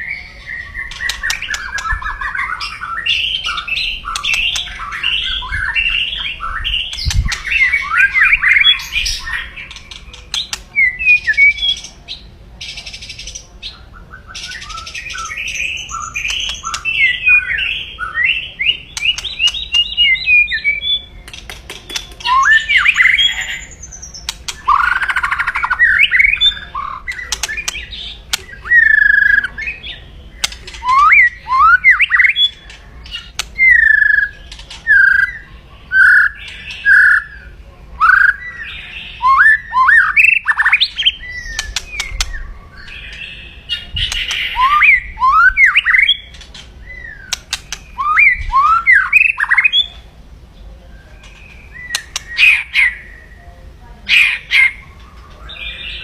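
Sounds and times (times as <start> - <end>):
bird harsh calls and whistles: 0.0 - 56.0
sharp clicks: 21.2 - 22.5, 27.1 - 28.5, 30.4 - 30.9, 32.7 - 33.6, 41.6 - 42.4, 47.3 - 47.9, 51.2 - 52.4.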